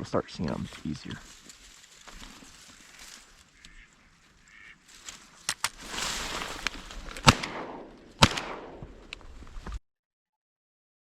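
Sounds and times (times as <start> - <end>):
duck quacks: 3.5 - 4.8
shotgun shots: 7.1 - 9.2.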